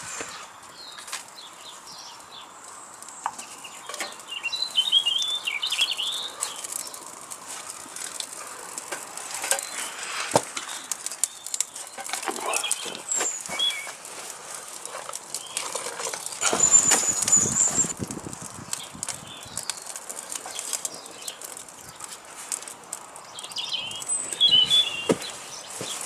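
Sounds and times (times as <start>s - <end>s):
sharp clicks and rustles: 6.4s - 23.6s.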